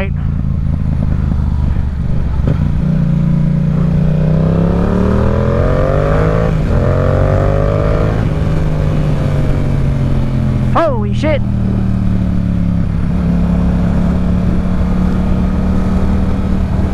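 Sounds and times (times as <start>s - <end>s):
motorcycle engine accelerating: 0.0s - 16.9s
wind rushing over microphone: 0.0s - 16.9s.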